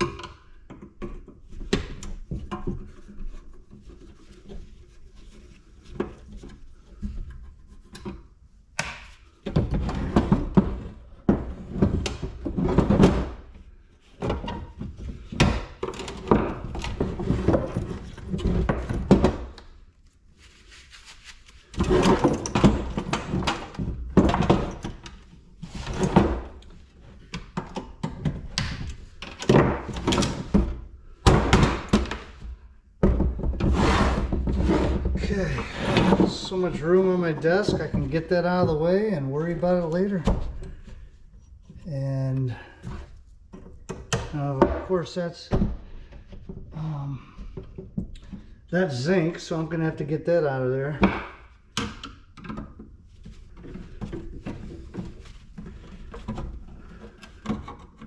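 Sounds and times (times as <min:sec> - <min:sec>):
scrap parts clattering on workbench: 0:21.7 - 0:24.9, 0:33.2 - 0:38.1.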